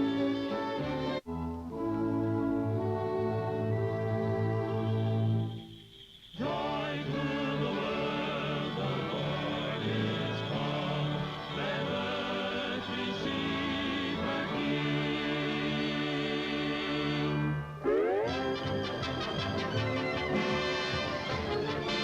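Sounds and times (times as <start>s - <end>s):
sustained accompaniment: 0.0s - 22.0s
choir singing with vibrato: 4.6s - 22.0s.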